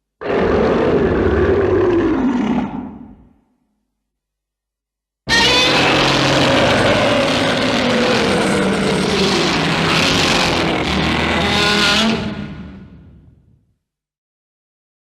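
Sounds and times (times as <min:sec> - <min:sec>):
monster roar: 0:00.2 - 0:03.4, 0:05.3 - 0:13.2.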